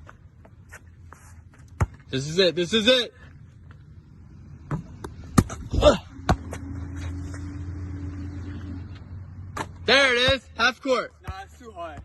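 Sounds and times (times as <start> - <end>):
basketball bouncing on court: 6.2 - 6.6, 11.2 - 12.0.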